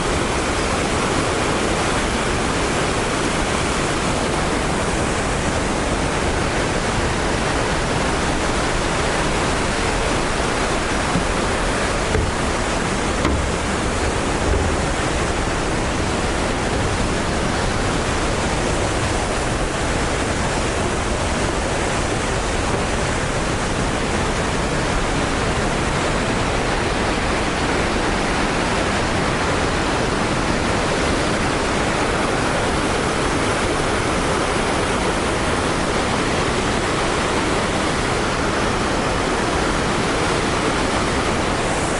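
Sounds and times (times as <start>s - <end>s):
waterfall rushing: 0.0s - 41.9s
faint low bumps: 10.0s - 17.0s.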